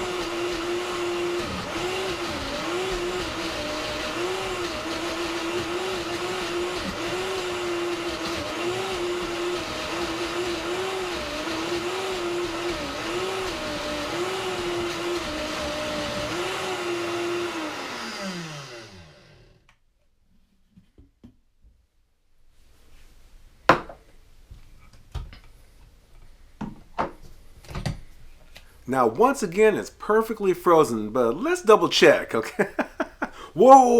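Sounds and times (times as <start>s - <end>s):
blender motor running: 0.0s - 19.6s.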